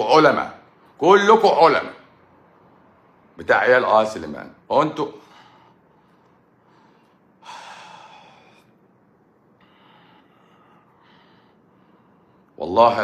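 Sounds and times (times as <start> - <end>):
man breathing heavily: 5.2 - 8.9, 9.5 - 12.6.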